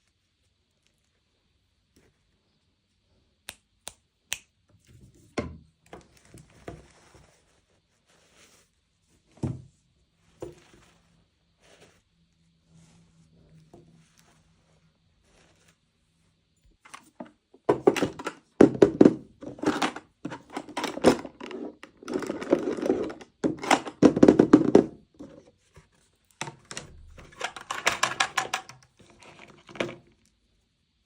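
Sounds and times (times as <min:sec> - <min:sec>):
plastic parts tapping and clicking: 0:16.9 - 0:25.4, 0:26.4 - 0:30.0.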